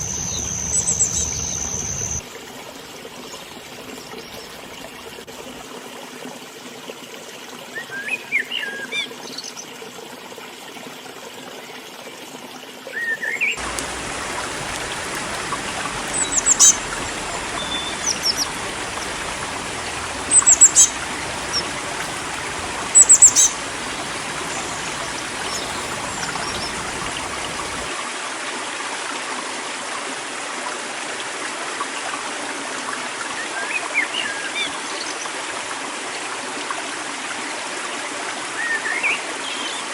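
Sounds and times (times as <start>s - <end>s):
small birds chirping: 0.0s - 2.2s, 13.6s - 27.9s
river water running: 0.0s - 12.8s, 13.4s - 39.5s.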